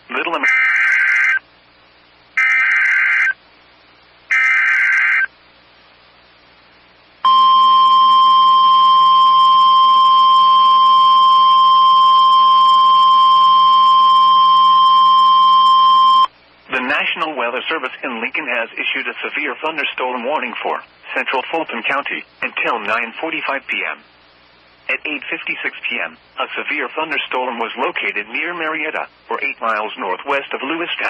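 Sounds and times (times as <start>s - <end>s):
steady warning alarm tone: 2.4s - 3.4s, 4.3s - 5.3s, 7.2s - 16.3s
warbling digital data bursts: 2.4s - 3.4s, 4.3s - 5.3s.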